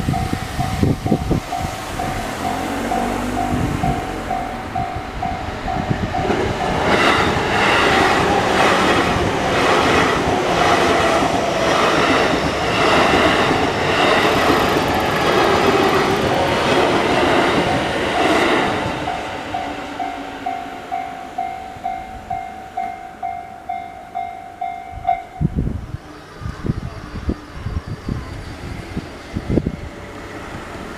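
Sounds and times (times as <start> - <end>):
level crossing alarm dinging: 0.0 - 7.5.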